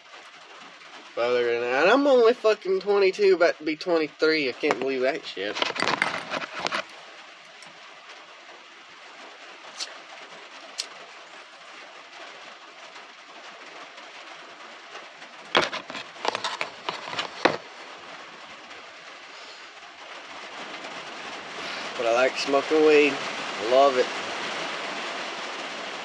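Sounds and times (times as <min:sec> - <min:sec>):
rain pattering on van roof: 0:00.0 - 0:26.0
objects handled knocking: 0:05.6 - 0:06.8, 0:15.5 - 0:17.6.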